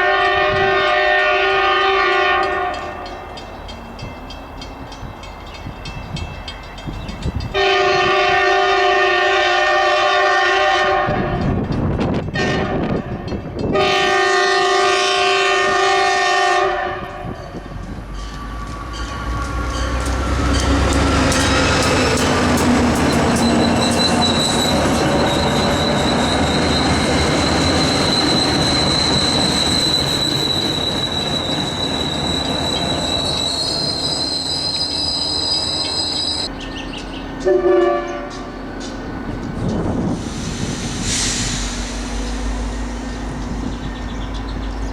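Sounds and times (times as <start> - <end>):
train horn: 0.0 - 3.4, 7.5 - 11.6, 12.3 - 17.6, 37.4 - 38.5
train wheels rumbling on rail: 0.0 - 44.9
high steady squeal: 20.6 - 37.4, 38.0 - 44.9.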